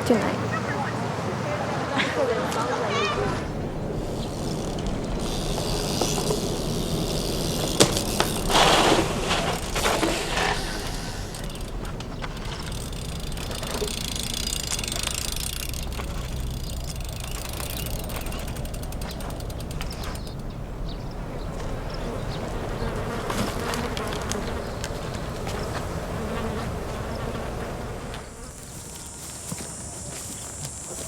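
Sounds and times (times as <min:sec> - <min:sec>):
bicycle freewheel ticking: 0:03.2 - 0:21.2.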